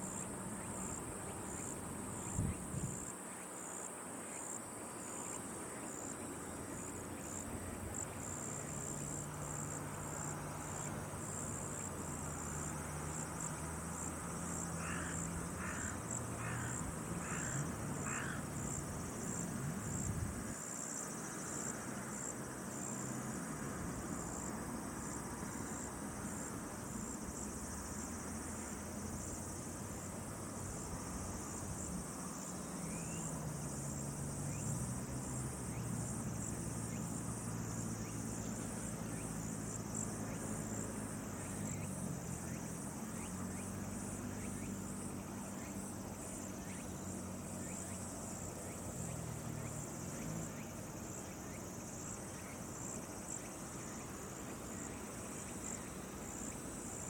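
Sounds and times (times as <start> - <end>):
insects chirping: 0.0 - 57.0.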